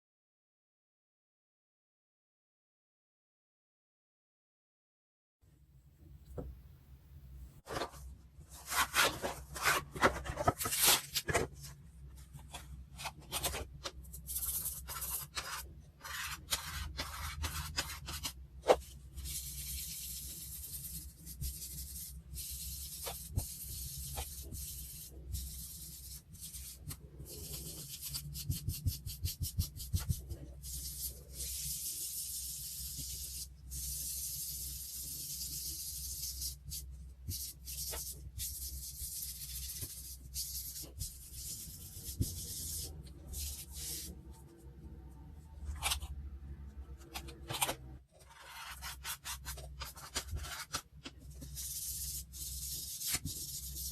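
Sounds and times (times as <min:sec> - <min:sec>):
scratching and rubbing on paper: 0:08.5 - 0:44.7, 0:47.0 - 0:53.9.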